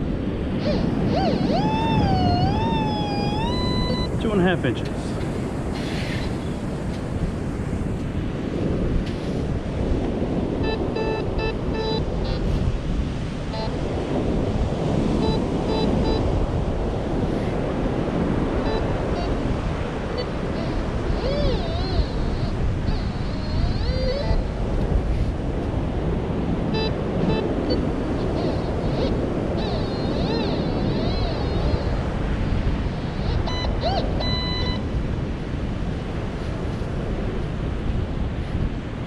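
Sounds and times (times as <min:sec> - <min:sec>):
wind buffeting microphone: 0:00.0 - 0:39.0
metal detector beeps: 0:00.6 - 0:04.2, 0:10.6 - 0:12.6, 0:13.5 - 0:13.8, 0:15.1 - 0:16.4, 0:18.5 - 0:24.9, 0:26.7 - 0:35.0
wavering high tones: 0:00.6 - 0:04.3, 0:10.6 - 0:12.6, 0:20.1 - 0:24.6, 0:26.8 - 0:32.2, 0:32.9 - 0:35.0.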